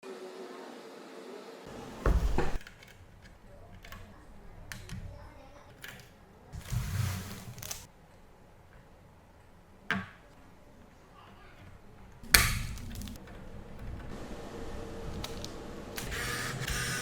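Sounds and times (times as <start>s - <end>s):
rustling: 6.5s - 7.9s.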